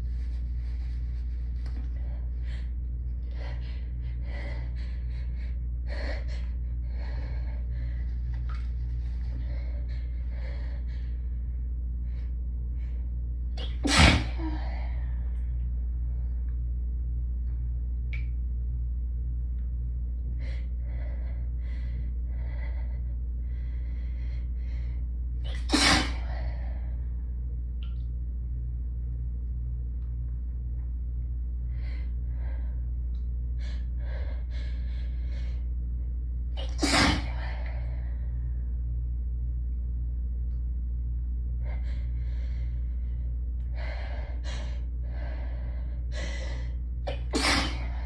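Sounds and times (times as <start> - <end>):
air conditioner hum: 0.0 - 48.0
person sneezing: 13.6 - 14.4, 25.5 - 26.2, 36.6 - 37.4, 47.1 - 47.9.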